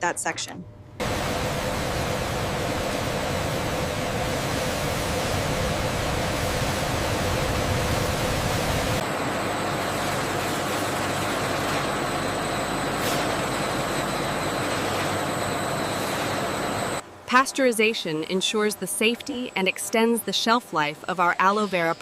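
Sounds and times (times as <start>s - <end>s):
factory machinery rushing: 1.0s - 17.0s
faint high whines: 1.0s - 17.0s.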